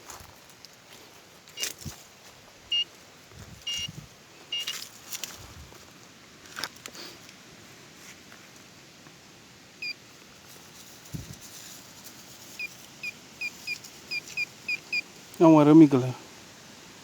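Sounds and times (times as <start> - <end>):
footsteps in leaf litter: 0.0 - 3.6, 4.5 - 7.2, 10.1 - 14.1
metal detector beeps: 1.6 - 1.8, 3.6 - 4.8, 12.5 - 15.1.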